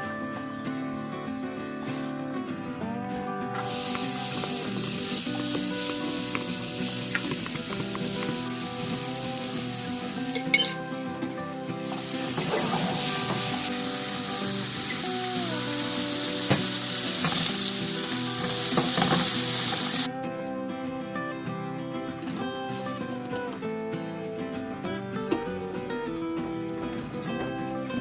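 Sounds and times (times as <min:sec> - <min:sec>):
food sizzling in oil: 0:03.6 - 0:20.1.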